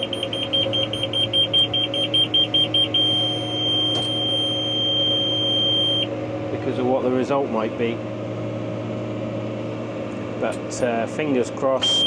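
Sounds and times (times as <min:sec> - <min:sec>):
electronic alarm beeping: 0:00.0 - 0:06.1, 0:11.8 - 0:12.0.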